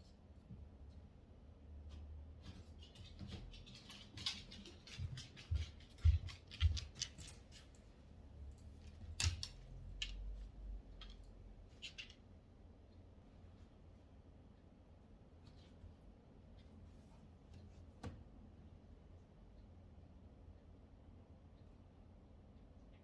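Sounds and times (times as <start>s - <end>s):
dog claws clicking on floor: 2.4s - 7.9s, 8.6s - 10.3s, 11.0s - 12.2s.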